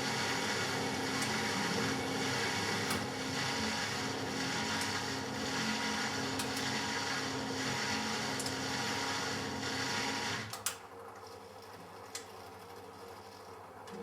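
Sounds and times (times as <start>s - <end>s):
washing machine motor hum: 0.0s - 14.0s.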